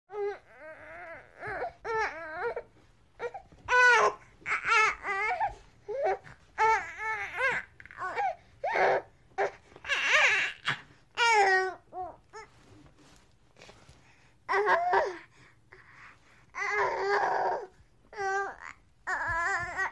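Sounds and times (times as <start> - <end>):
baby crying: 3.2 - 12.5, 16.6 - 19.9.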